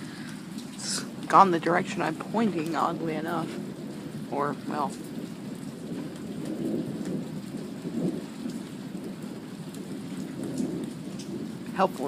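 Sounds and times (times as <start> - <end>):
steady rain falling: 0.0 - 12.0.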